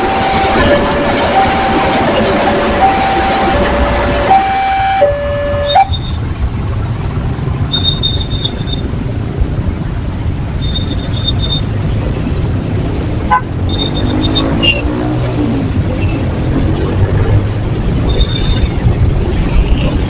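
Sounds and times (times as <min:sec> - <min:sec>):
high-pitched wheel squeal: 0:00.0 - 0:06.2, 0:07.7 - 0:08.9, 0:10.6 - 0:11.7, 0:13.7 - 0:15.0, 0:18.0 - 0:18.7, 0:19.4 - 0:20.0.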